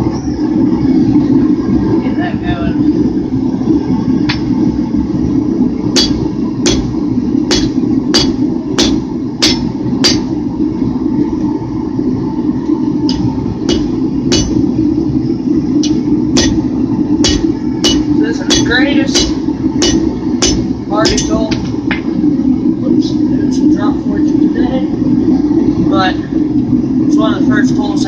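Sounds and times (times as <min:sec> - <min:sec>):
low rumble: 0:00.0 - 0:28.0
hammer striking hot steel: 0:05.9 - 0:10.4, 0:13.0 - 0:14.8, 0:15.8 - 0:22.1.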